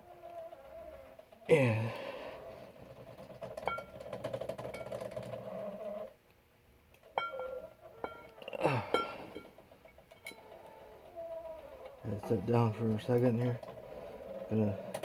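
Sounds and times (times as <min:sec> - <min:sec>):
falling groan of strain: 0:08.4 - 0:09.4.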